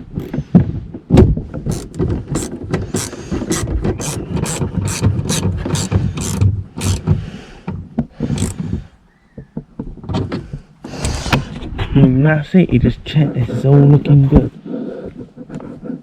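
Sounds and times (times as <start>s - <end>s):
socket ratchet clicking: 0.0s - 0.3s, 1.7s - 7.1s, 8.3s - 8.6s.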